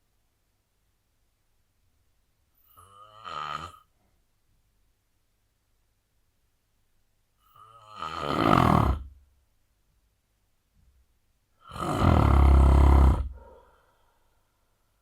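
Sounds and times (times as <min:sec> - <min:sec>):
man snoring: 0:02.7 - 0:03.9, 0:07.5 - 0:09.2, 0:11.6 - 0:13.7.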